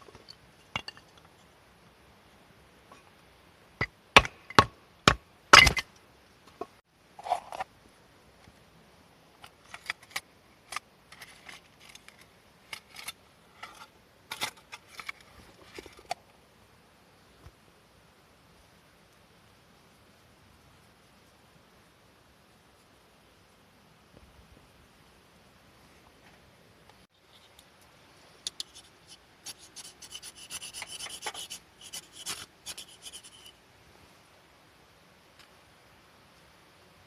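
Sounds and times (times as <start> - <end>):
blade chopping firewood: 4.2 - 5.9.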